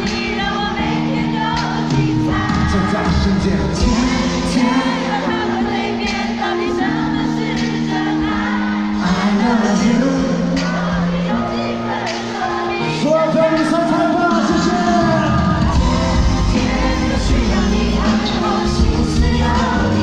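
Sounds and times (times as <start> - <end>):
live pop concert singing: 0.0 - 20.0.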